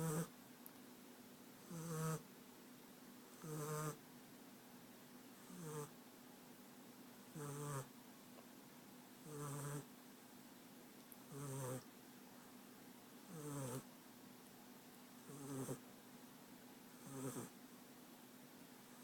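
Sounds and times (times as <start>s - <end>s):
puppy snoring: 0.0s - 0.3s, 1.6s - 2.2s, 3.3s - 4.0s, 5.4s - 6.0s, 7.3s - 7.9s, 9.2s - 9.9s, 11.2s - 11.9s, 13.3s - 13.9s, 15.2s - 15.8s, 17.0s - 17.6s.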